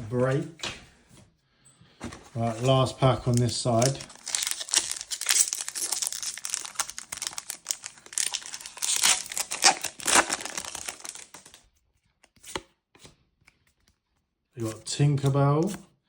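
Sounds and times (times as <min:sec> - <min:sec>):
foil wrapper tearing and crinkling: 0:02.9 - 0:11.6.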